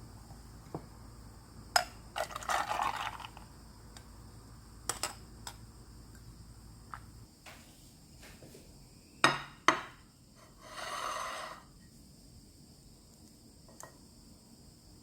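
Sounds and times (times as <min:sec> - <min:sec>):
dishes clinking: 0:09.2 - 0:10.0.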